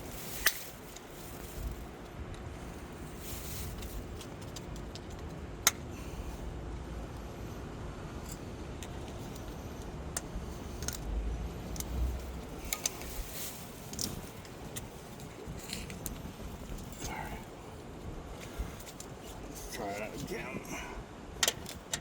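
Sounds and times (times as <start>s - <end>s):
low steady rumble: 0.0s - 22.0s
metallic clicks of tools: 8.2s - 11.1s, 21.4s - 22.0s.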